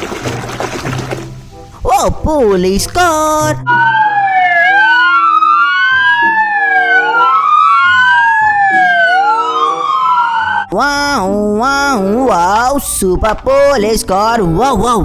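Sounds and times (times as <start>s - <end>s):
police siren wailing: 3.6s - 11.2s.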